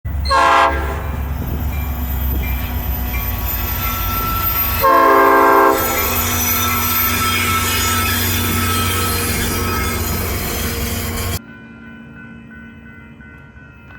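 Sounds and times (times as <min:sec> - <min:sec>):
train rumble: 0:00.1 - 0:13.9
locomotive air horn blast: 0:00.2 - 0:01.3, 0:04.8 - 0:06.3.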